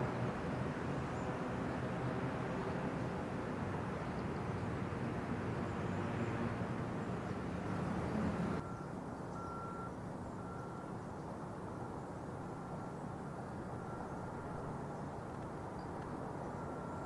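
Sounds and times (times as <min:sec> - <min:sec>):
low engine rumble: 0:00.0 - 0:09.4.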